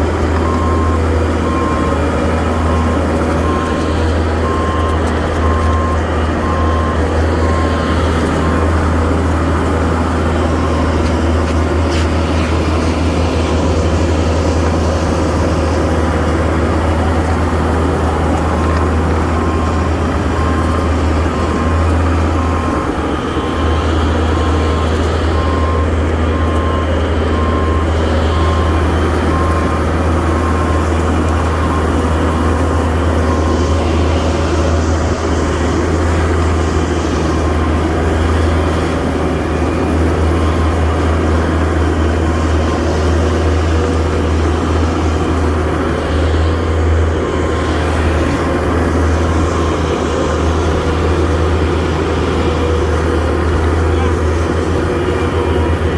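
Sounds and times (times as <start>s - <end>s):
backup alarm beeping: 0.0s - 55.9s
skid steer engine rumbling: 0.0s - 55.9s.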